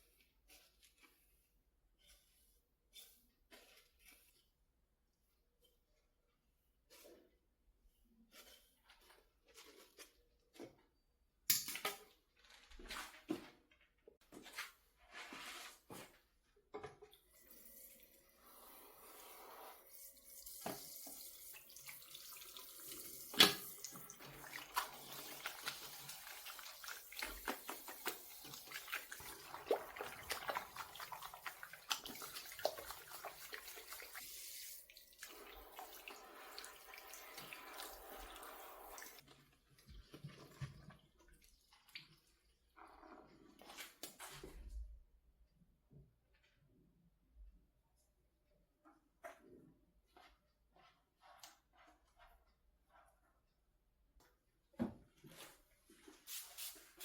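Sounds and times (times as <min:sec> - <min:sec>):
tap running into a sink: 0:23.2 - 0:24.4
water splashing: 0:23.3 - 0:39.2.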